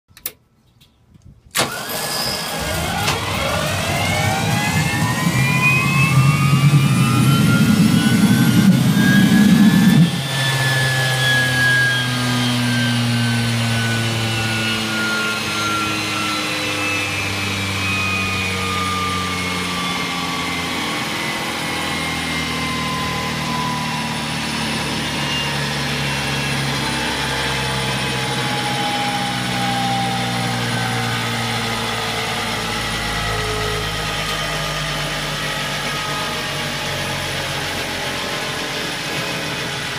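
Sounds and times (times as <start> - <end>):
gas turbine whining: 1.6 - 39.9
turbine winding down: 1.6 - 39.9.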